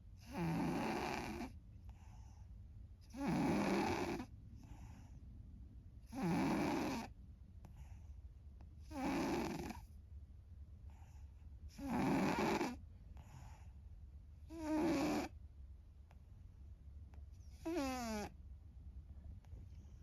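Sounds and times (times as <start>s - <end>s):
cat snoring: 0.2s - 2.1s, 3.0s - 5.0s, 6.0s - 7.2s, 8.8s - 9.9s, 11.7s - 13.6s, 14.5s - 15.4s, 17.5s - 18.3s
faint cat breathing: 0.9s - 2.6s, 3.8s - 5.4s, 7.6s - 8.3s, 10.8s - 13.9s.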